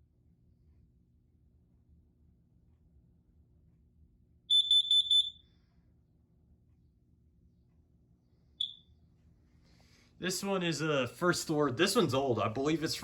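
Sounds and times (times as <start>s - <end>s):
alarm beeping: 4.5s - 5.4s, 8.6s - 8.8s.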